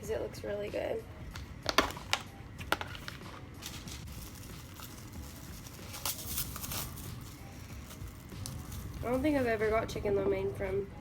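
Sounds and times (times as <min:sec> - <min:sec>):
food packaging crinkling: 0:02.8 - 0:09.2.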